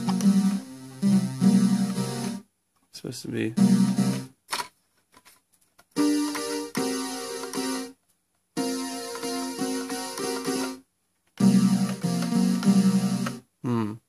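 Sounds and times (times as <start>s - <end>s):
synthesizer chords and notes: 0.0s - 2.4s, 3.6s - 4.3s, 6.0s - 7.9s, 8.6s - 10.8s, 11.4s - 13.4s.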